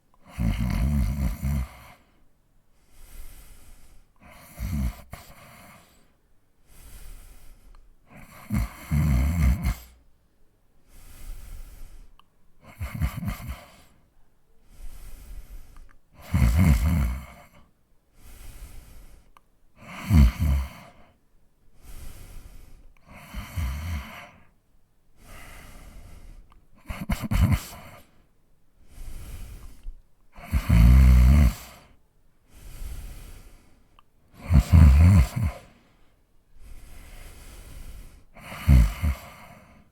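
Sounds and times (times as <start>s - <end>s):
quiet breaths: 0.0s - 39.9s
man snoring: 0.2s - 2.2s, 2.9s - 6.0s, 6.7s - 10.0s, 10.9s - 14.0s, 14.8s - 17.6s, 19.8s - 21.1s, 21.8s - 24.5s, 25.2s - 28.1s, 28.9s - 35.8s, 36.6s - 39.9s.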